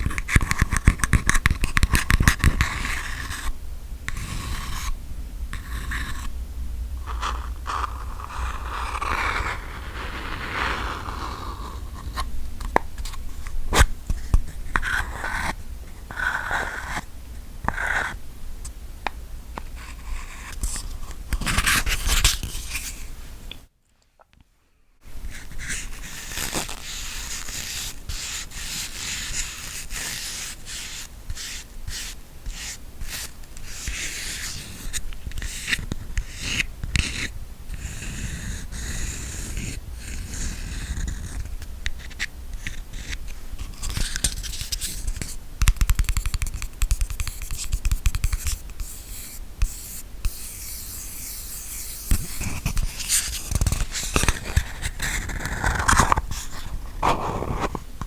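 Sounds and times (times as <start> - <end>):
scratching on an object: 25.3 - 57.9.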